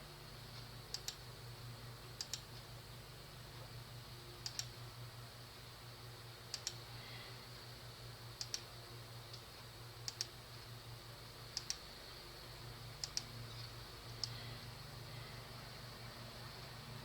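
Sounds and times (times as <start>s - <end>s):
computer mouse clicking: 0.9s - 1.2s, 2.2s - 2.6s, 4.4s - 4.8s, 6.5s - 6.8s, 8.4s - 8.7s, 9.3s - 10.4s, 11.5s - 11.8s, 13.0s - 13.3s, 14.1s - 14.4s.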